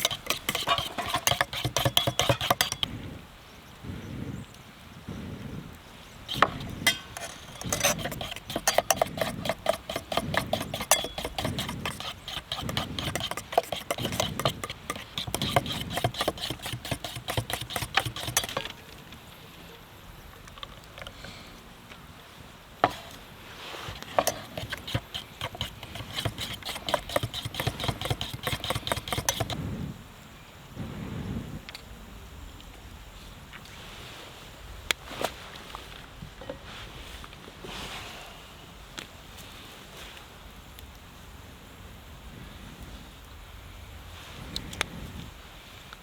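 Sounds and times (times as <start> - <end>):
whisking in a metal bowl: 0.0 - 2.9, 6.3 - 18.7, 23.9 - 29.6.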